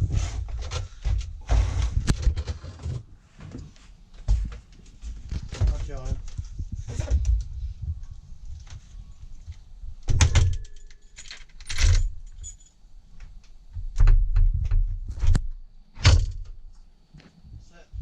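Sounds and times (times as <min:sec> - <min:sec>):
door lock and bolt clunking: 0:10.0 - 0:12.8
keys rattling: 0:10.1 - 0:12.8.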